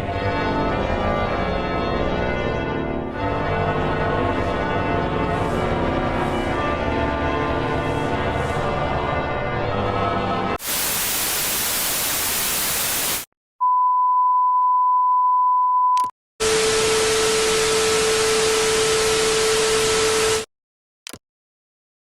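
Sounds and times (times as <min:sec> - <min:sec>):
tv static: 0:10.6 - 0:13.3.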